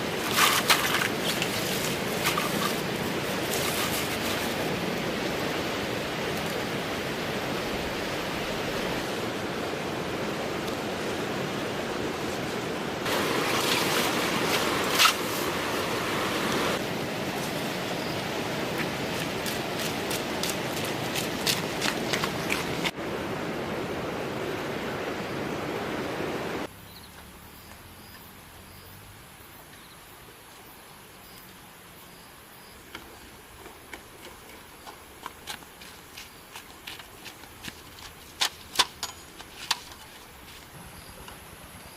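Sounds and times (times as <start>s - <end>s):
flowing water rushing: 0.0s - 26.7s.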